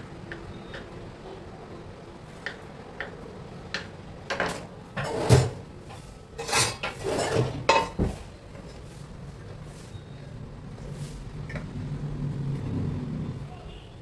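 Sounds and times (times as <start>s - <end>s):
dishes and utensils clattering: 4.3s - 8.9s.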